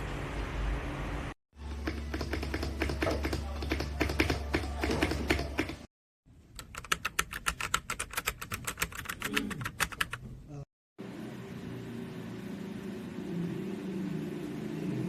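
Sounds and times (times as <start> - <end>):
mechanical keyboard typing: 1.8 - 5.8, 6.6 - 10.2.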